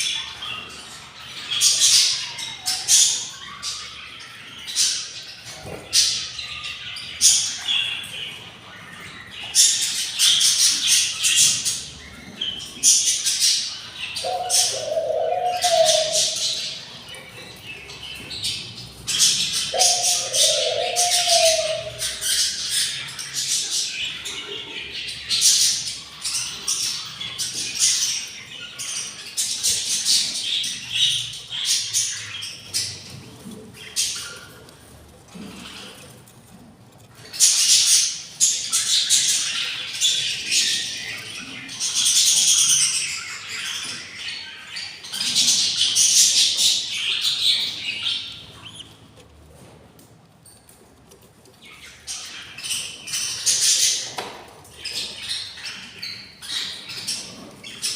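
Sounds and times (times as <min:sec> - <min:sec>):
chicks raspy begging chirps: 0:00.0 - 0:29.0, 0:37.1 - 0:49.2.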